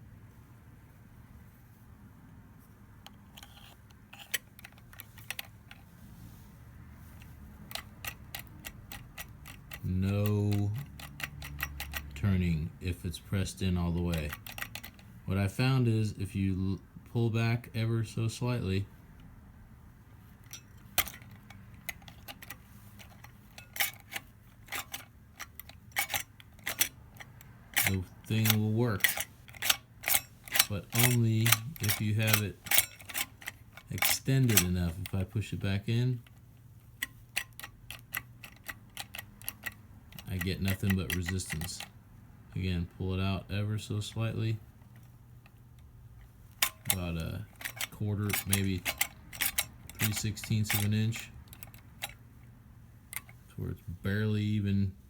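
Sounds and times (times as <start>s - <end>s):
lock mechanism clicking: 3.0s - 5.9s, 7.1s - 15.2s, 20.3s - 42.0s, 44.7s - 53.5s.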